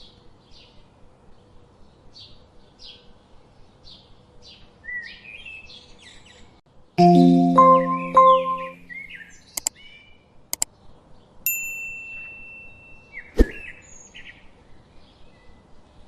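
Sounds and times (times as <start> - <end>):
bright ringing ding: 7.0 - 9.0.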